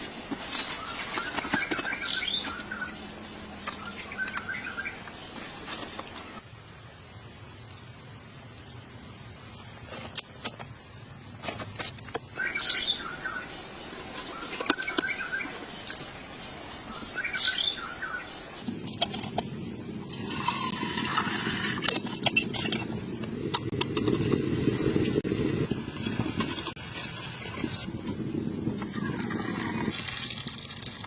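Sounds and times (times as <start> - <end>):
bird chirps: 12.4 - 16.0, 16.9 - 18.4.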